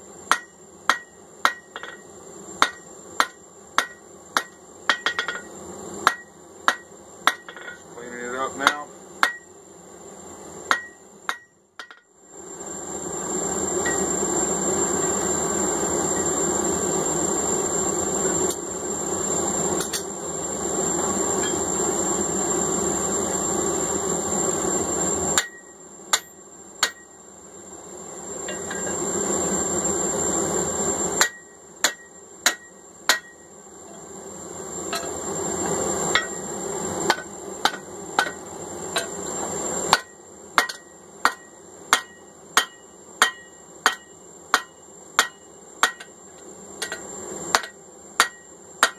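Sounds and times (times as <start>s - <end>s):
hammer striking steel on anvil: 0.3s - 2.0s, 2.6s - 7.8s, 8.6s - 9.5s, 10.7s - 12.1s, 25.4s - 27.2s, 28.5s - 29.0s, 31.2s - 33.5s, 34.9s - 35.2s, 36.1s - 36.4s, 37.1s - 39.1s, 39.9s - 46.2s, 46.8s - 48.9s.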